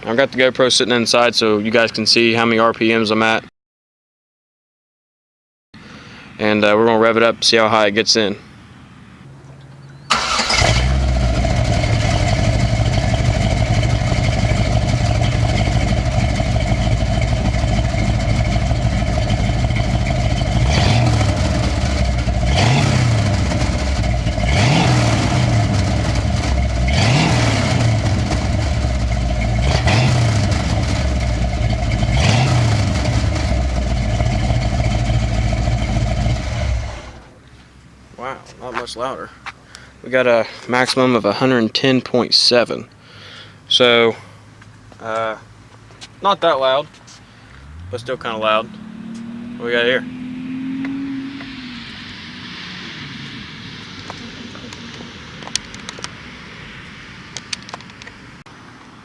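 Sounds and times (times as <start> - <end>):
car engine starting and revving: 10.1 - 37.4, 47.5 - 56.2.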